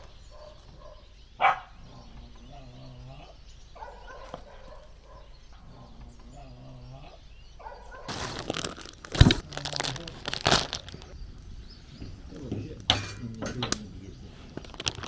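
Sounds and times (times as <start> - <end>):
crunching and crackling: 8.0 - 15.0.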